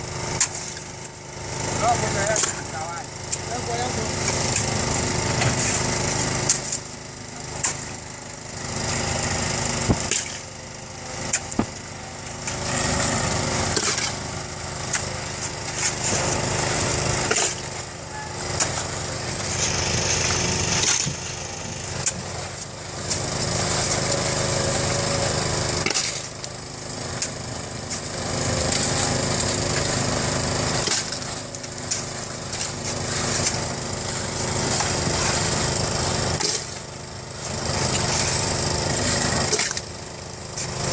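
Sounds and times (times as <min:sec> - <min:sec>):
small engine running: 0:00.0 - 0:40.9.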